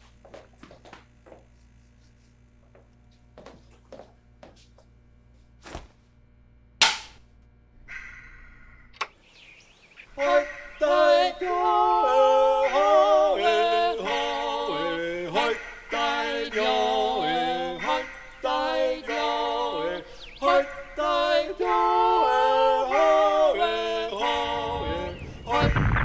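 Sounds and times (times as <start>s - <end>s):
low rumbling noise: 19.9s - 26.0s.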